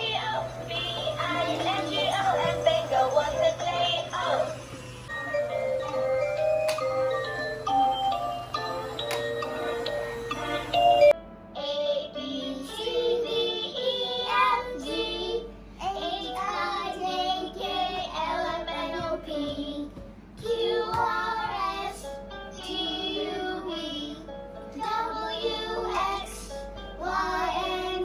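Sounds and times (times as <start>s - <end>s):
child-like singing voice: 0.0s - 4.6s, 11.6s - 28.0s
simple backing tune: 0.0s - 28.0s.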